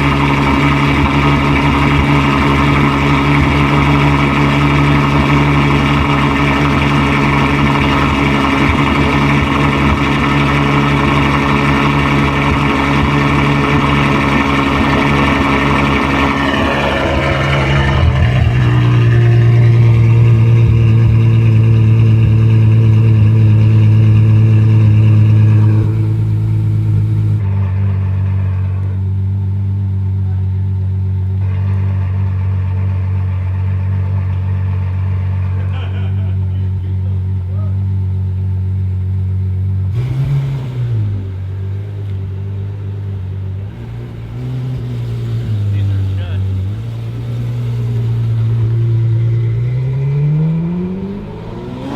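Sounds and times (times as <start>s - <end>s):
car engine idling: 0.0s - 51.9s.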